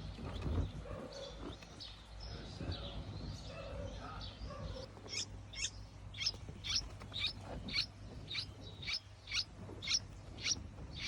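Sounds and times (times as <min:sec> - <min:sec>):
small bird chirping: 0:04.4 - 0:11.0.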